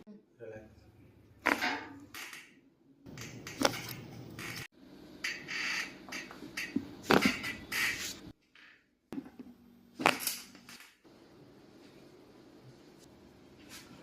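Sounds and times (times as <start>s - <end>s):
joints cracking and popping: 1.5s - 8.3s.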